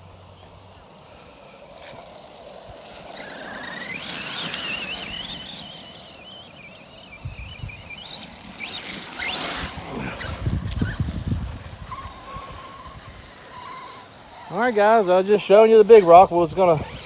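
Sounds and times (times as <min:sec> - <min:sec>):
toy truck motor whining: 0:00.0 - 0:17.0.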